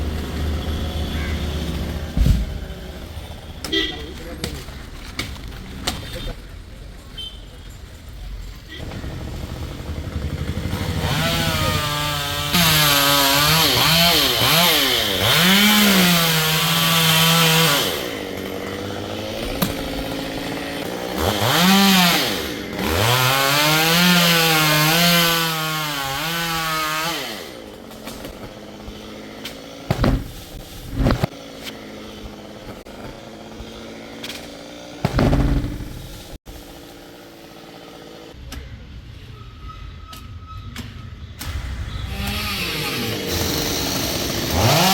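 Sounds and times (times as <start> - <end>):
chainsaw cutting wood: 8.8 - 38.4, 42.1 - 44.9.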